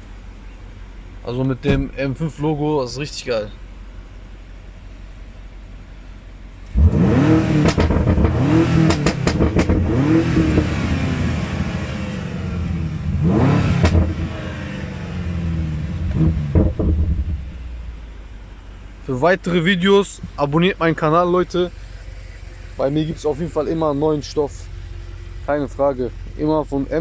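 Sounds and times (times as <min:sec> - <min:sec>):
car engine revving: 0:06.6 - 0:27.0.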